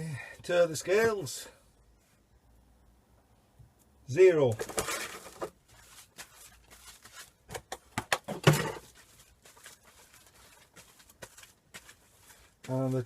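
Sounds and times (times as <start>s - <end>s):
wire rustling: 8.4s - 13.0s.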